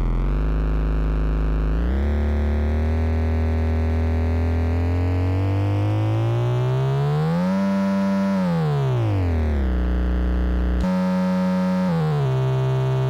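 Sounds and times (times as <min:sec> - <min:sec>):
synthesizer chord gliding: 0:10.8 - 0:13.0.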